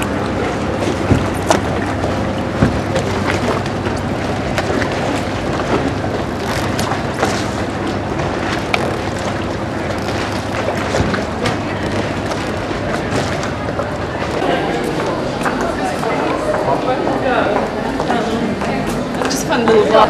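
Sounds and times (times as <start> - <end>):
motorboat engine humming: 0.0 - 20.0
water wash: 0.0 - 20.0.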